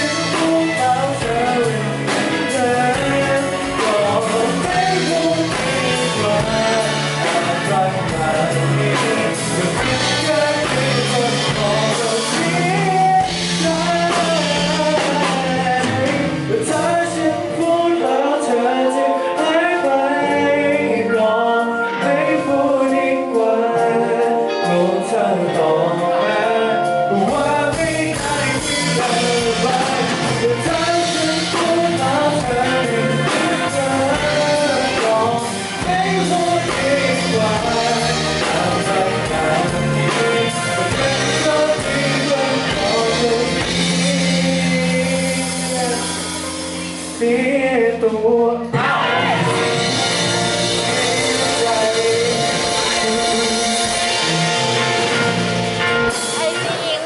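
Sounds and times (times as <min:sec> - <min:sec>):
band playing: 0:00.0 - 0:57.0
bass guitar: 0:00.0 - 0:57.0
person singing live: 0:00.0 - 0:57.0.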